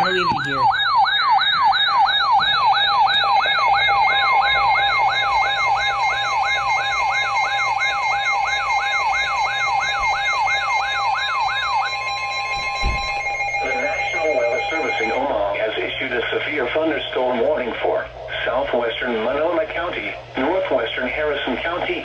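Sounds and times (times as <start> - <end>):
electronic siren yelping: 0.0 - 15.2
steady electronic tone: 1.8 - 15.4.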